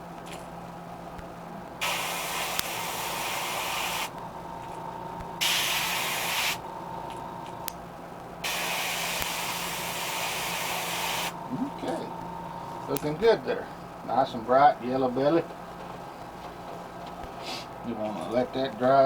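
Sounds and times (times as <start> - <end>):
steady low hum: 0.0 - 19.0
airbrush spraying hiss: 1.8 - 4.2, 5.4 - 6.6, 8.4 - 11.4.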